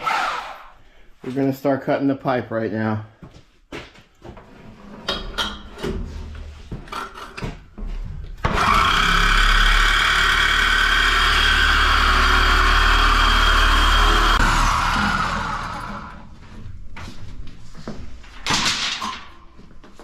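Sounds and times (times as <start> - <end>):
power tool cutting pipe: 8.5 - 16.3.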